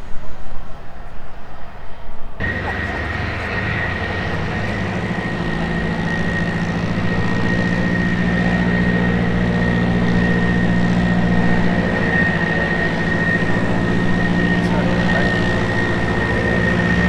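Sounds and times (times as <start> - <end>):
jet engine high whine: 0.0 - 17.0
low engine drone: 2.4 - 17.0.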